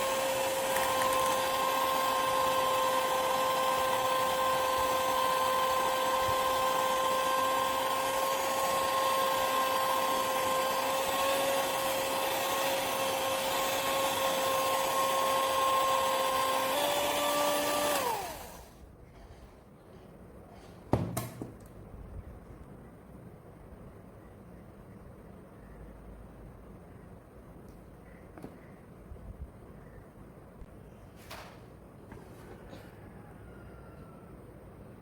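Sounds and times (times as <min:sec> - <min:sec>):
small electric motor whining: 0:00.0 - 0:18.7.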